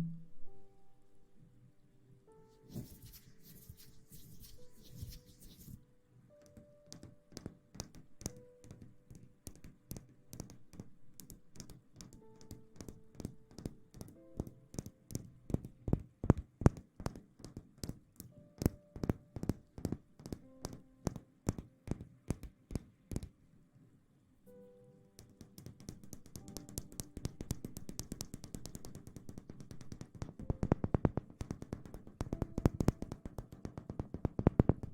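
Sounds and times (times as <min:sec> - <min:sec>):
faint soft music: 0:00.0 - 0:34.9
rapid sharp taps: 0:09.4 - 0:23.4, 0:25.2 - 0:34.9.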